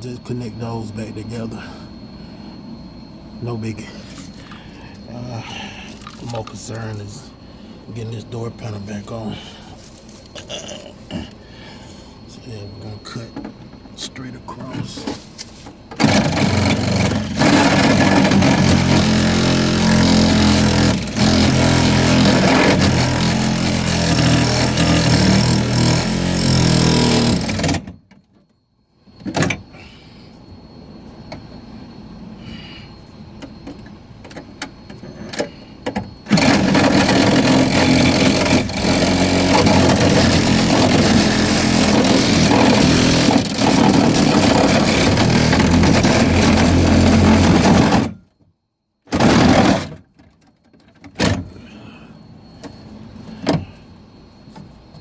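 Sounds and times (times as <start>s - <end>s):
power cutting tool cutting metal: 16.0s - 27.7s, 36.3s - 48.1s.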